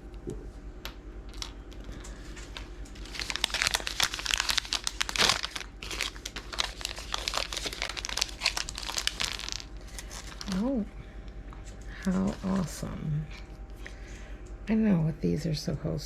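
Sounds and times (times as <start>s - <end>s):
plastic wrapping crinkling and tearing: 1.3s - 10.9s.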